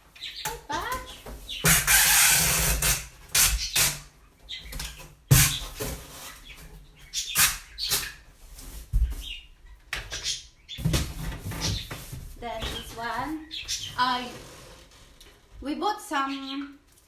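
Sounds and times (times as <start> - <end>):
packing tape pulled off roll: 1.7 - 4.0, 7.4 - 8.2.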